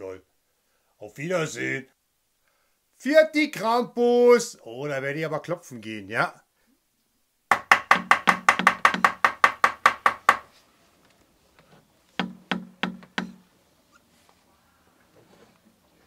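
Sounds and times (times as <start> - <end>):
hammer knocking on wood: 7.5 - 10.5, 12.2 - 13.4.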